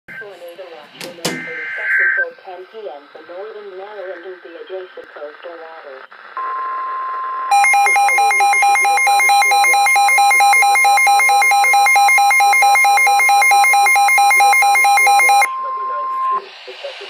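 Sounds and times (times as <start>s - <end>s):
steady warning alarm tone: 1.3s - 2.3s, 6.4s - 16.4s
rapidly pulsing electronic alert: 7.5s - 16.4s.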